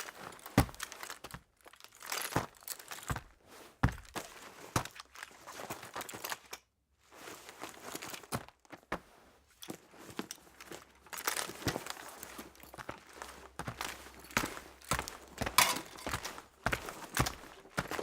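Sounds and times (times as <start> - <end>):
crunching crinkling rustles: 0.0 - 6.5, 9.6 - 15.0
footsteps: 15.4 - 16.4.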